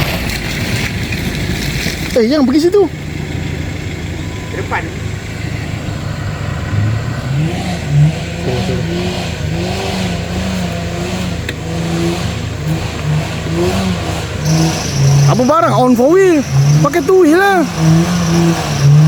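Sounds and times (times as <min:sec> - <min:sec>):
off-road vehicle engine revving: 0:00.0 - 0:19.0.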